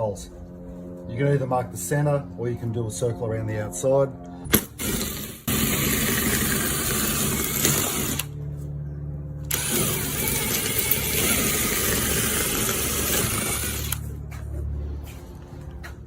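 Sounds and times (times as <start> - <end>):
drill motor spinning free: 4.6 - 8.3, 9.5 - 14.1
power drill drilling into concrete: 4.6 - 8.3, 9.5 - 14.0.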